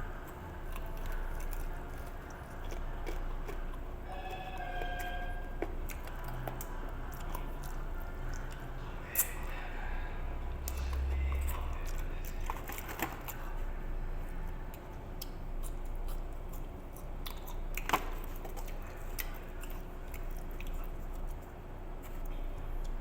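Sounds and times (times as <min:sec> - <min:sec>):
person chewing food: 0:00.0 - 0:23.0
low rumble: 0:09.6 - 0:12.6.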